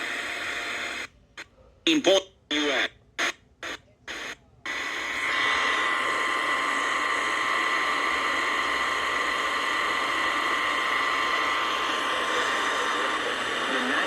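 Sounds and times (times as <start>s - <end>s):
radio static hiss: 0.0s - 14.0s
short radio sound bursts: 1.9s - 6.4s.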